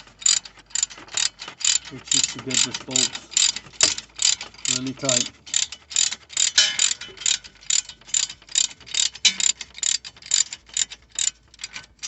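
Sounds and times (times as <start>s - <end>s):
ratchet wrench clicking: 0.2s - 12.0s.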